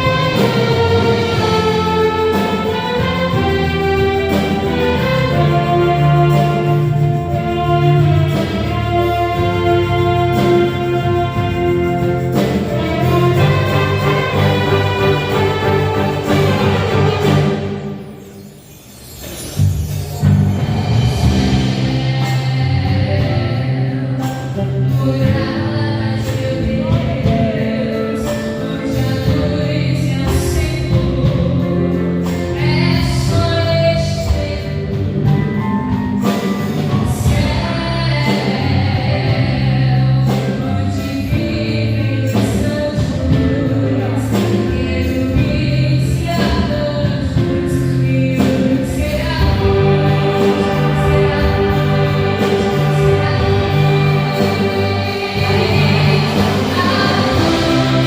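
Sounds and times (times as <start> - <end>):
gospel band playing: 0.0 - 58.0
voices singing: 48.3 - 58.0.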